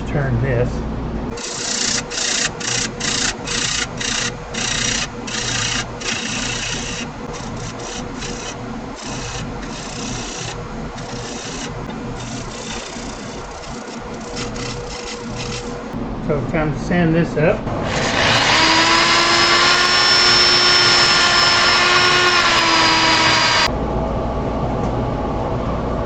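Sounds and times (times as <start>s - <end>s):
lathe tool hissing cuts on wood: 1.4s - 16.0s, 17.7s - 23.7s.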